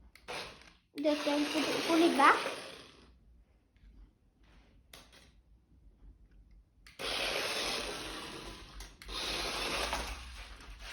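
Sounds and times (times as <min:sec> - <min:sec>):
toy car electric motor running: 0:00.2 - 0:03.1, 0:07.0 - 0:10.9.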